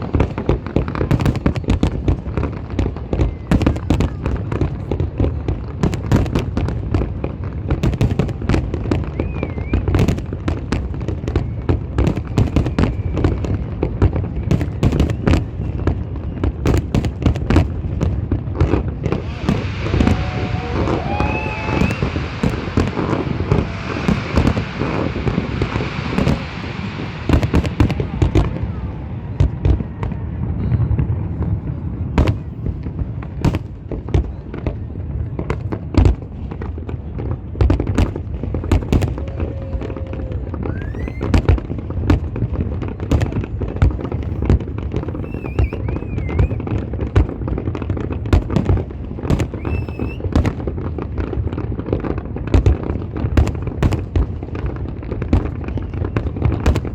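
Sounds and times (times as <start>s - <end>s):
fireworks whistles: 0.0s - 4.6s, 7.8s - 17.3s, 18.7s - 29.5s, 38.8s - 41.7s, 43.0s - 47.4s, 48.6s - 50.6s, 55.5s - 56.9s
fireworks bangs and crackles: 0.0s - 56.9s
fireworks hiss: 18.9s - 28.9s, 43.9s - 46.7s, 49.3s - 50.3s
low rumble: 19.0s - 33.2s.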